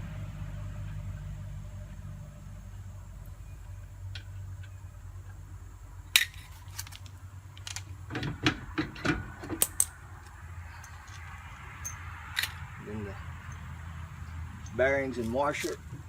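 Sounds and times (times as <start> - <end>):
metal tools clicking and clinking: 9.0 - 12.6.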